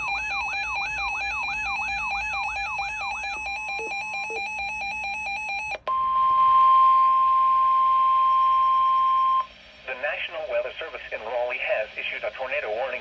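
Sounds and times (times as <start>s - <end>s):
electronic alarm with falling sweeps: 0.0s - 9.5s
steady alarm tone: 0.0s - 10.0s.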